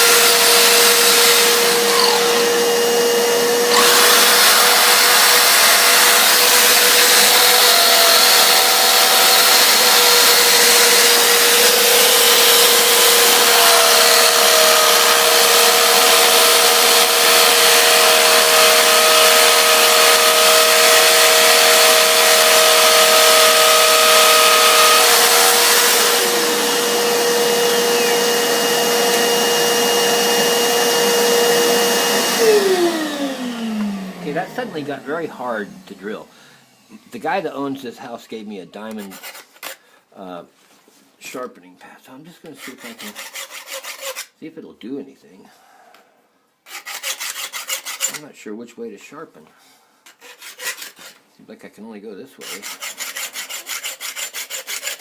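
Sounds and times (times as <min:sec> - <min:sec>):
drill bit cutting hiss: 0:00.0 - 0:30.5
electric drill motor whine: 0:00.0 - 0:35.8.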